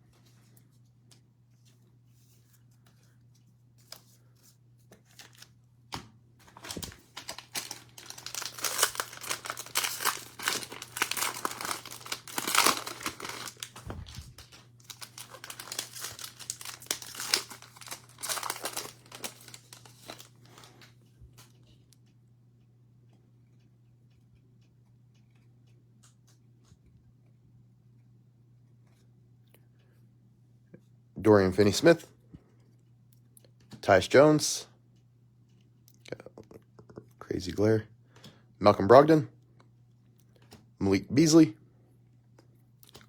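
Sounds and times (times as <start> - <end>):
cellophane wrapper crinkling: 5.0 - 5.6, 6.4 - 21.5.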